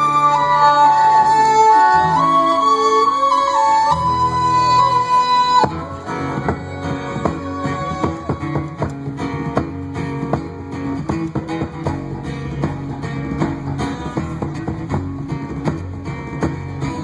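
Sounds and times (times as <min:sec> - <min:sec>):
held wind instrument note: 0:00.0 - 0:09.2
bass line: 0:00.0 - 0:17.0
picked guitar notes: 0:00.0 - 0:17.0.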